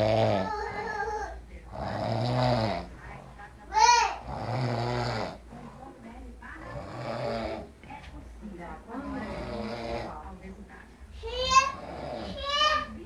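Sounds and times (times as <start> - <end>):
man snoring heavily: 0.0 - 0.5, 1.7 - 2.9, 4.2 - 5.4, 6.7 - 7.7, 11.8 - 12.4.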